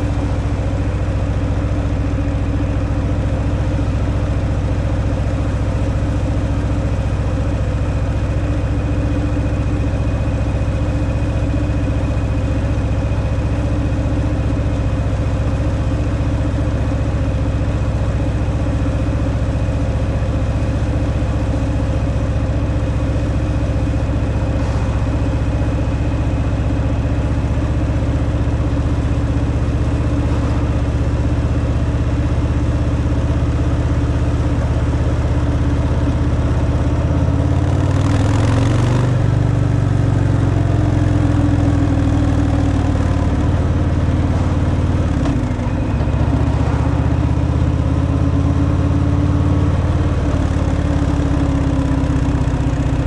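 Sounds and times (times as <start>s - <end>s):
motorcycle engine running steadily: 0.0s - 53.0s.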